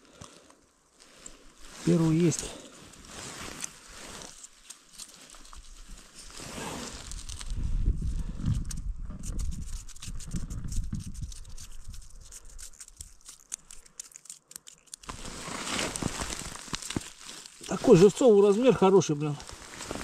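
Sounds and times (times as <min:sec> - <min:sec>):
crinkling handling noises: 0:00.0 - 0:08.8, 0:11.1 - 0:20.0
wind buffeting microphone: 0:07.4 - 0:12.0.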